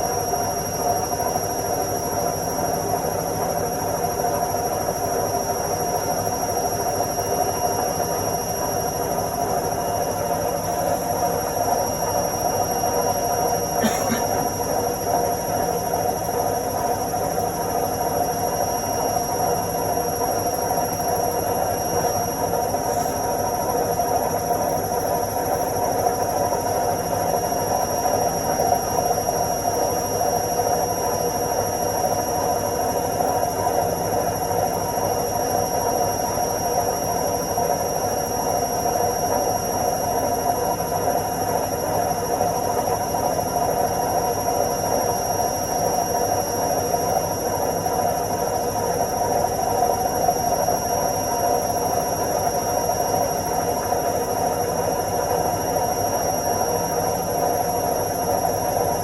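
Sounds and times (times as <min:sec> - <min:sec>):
washing machine spinning: 0:00.0 - 0:59.0.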